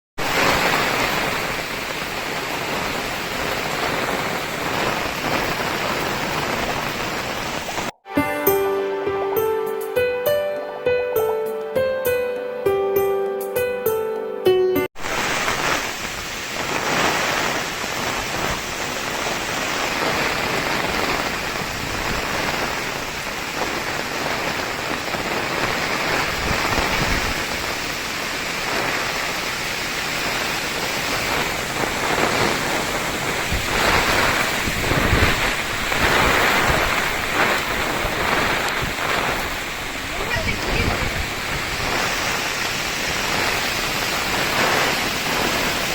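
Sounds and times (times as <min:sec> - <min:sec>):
gusting wind: 0:00.2 - 0:08.0, 0:15.0 - 0:45.9
heavy rain falling: 0:00.2 - 0:11.8, 0:15.0 - 0:45.9.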